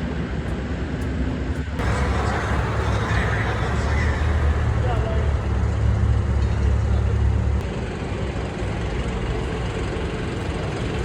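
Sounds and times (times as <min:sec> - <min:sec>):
crowd noise: 0:01.8 - 0:07.6
vehicle engine rumble: 0:01.8 - 0:11.0.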